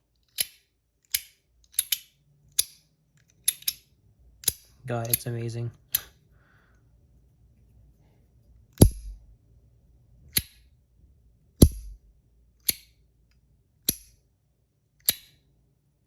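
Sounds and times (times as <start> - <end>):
metal fidget coin sliding and clicking: 0.2 - 5.3, 12.6 - 12.9, 15.0 - 15.4.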